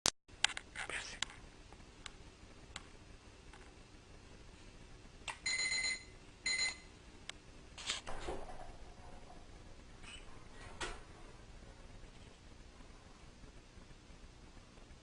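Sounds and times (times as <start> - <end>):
doorbell beeps: 5.4 - 6.8.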